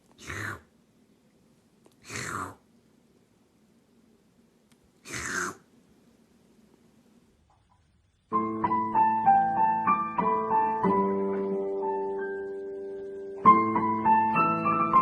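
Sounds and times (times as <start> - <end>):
piano music: 8.3 - 15.0.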